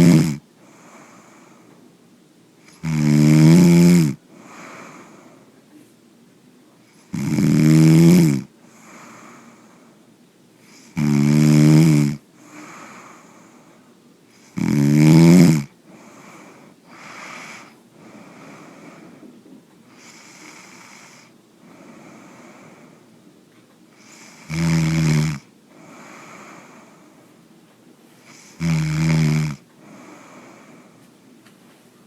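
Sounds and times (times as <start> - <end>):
man snoring: 0.0 - 1.4, 2.7 - 5.3, 6.9 - 9.6, 10.7 - 13.5, 14.4 - 19.2, 19.9 - 23.0, 24.0 - 27.0, 28.3 - 30.8
soft breaths: 0.0 - 2.8, 3.6 - 7.2, 8.6 - 11.0, 12.3 - 14.6, 15.7 - 24.5, 25.4 - 32.0.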